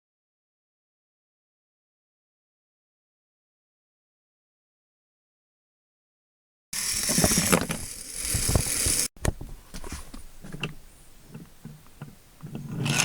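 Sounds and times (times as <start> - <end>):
small hard objects rattling: 6.8 - 9.1.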